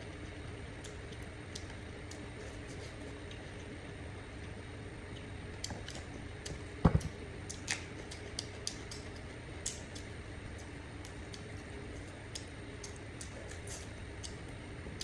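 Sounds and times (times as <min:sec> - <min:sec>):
steady low hum: 0:00.0 - 0:15.0
chewing clicks and smacks: 0:00.8 - 0:03.4, 0:05.6 - 0:15.0
dull double thump: 0:06.8 - 0:07.1.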